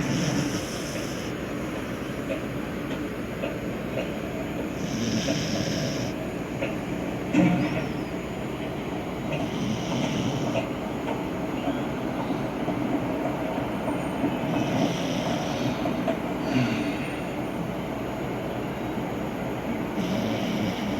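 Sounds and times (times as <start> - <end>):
dog snoring: 0.0 - 1.4, 4.8 - 6.2, 9.3 - 10.7, 14.5 - 15.8, 19.9 - 20.9.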